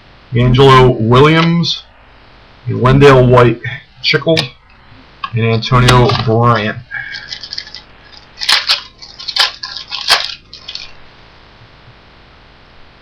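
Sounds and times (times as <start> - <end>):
foil wrapper tearing and crackling: 7.1 - 11.0.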